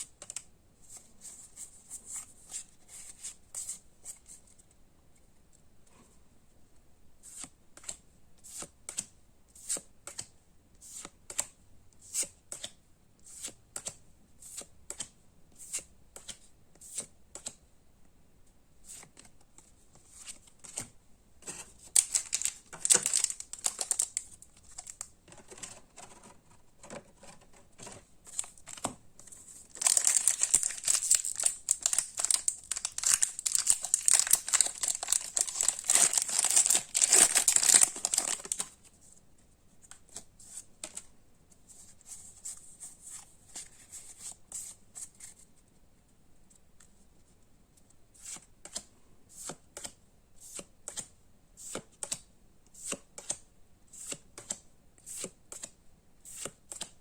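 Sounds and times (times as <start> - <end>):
packaging crinkling and tearing: 21.8 - 25.0, 29.6 - 38.8.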